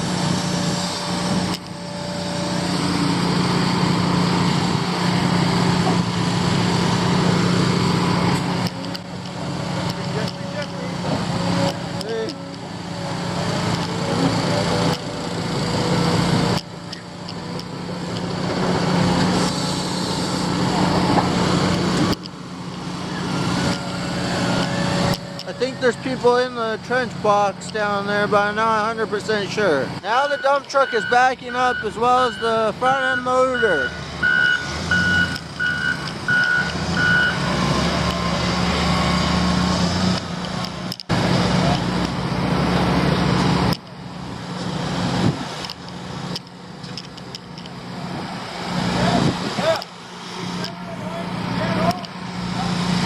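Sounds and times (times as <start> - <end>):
heavy machinery diesel engines: 0.0 - 53.0
reversing alarm beeps: 30.2 - 37.4.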